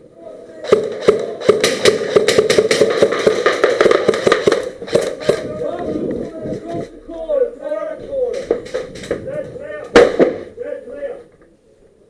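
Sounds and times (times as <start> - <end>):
airsoft guns firing: 0.6 - 5.7, 9.8 - 10.6.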